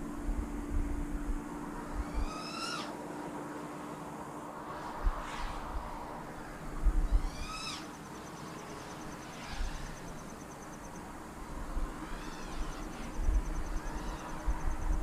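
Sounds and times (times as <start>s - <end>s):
wind buffeting microphone: 0.0s - 2.4s, 4.7s - 7.8s, 11.3s - 15.0s.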